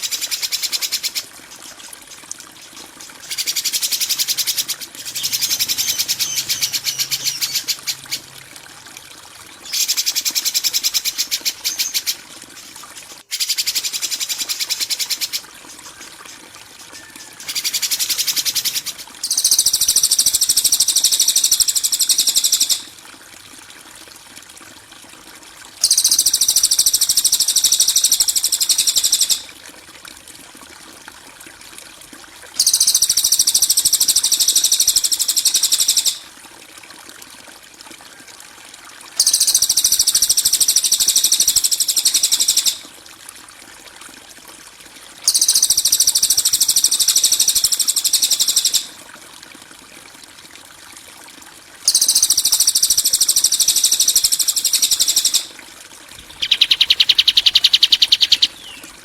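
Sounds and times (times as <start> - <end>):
high-pitched songbird chirping: 4.2 - 8.2, 56.2 - 59.0.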